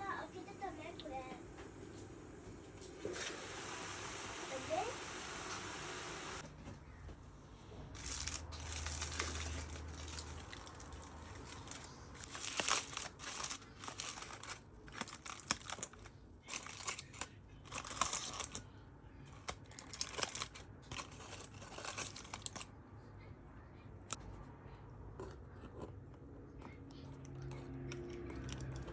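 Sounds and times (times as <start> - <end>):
aluminium foil crinkling: 8.0 - 18.7, 19.3 - 22.7.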